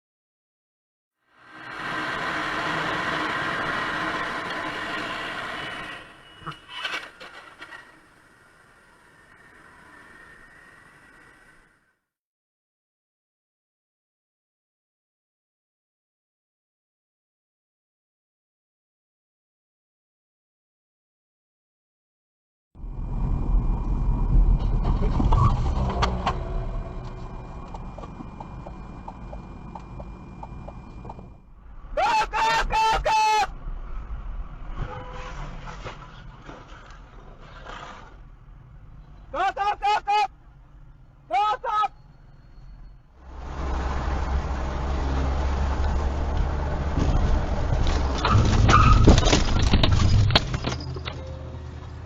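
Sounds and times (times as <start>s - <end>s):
engine and road rumble: 1.3s - 11.9s, 22.8s - 32.1s, 33.5s - 52.0s.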